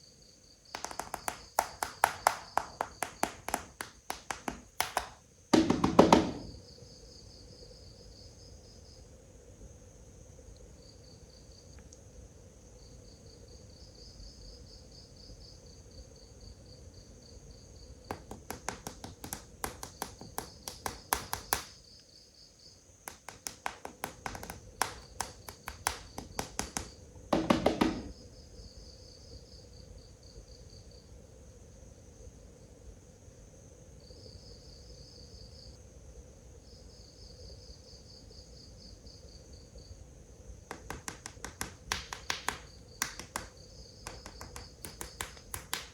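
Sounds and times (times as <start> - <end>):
crickets chirping: 0.0 - 45.9
rapid clicks and taps: 0.8 - 6.6, 18.1 - 21.8, 23.1 - 28.2, 40.7 - 45.9.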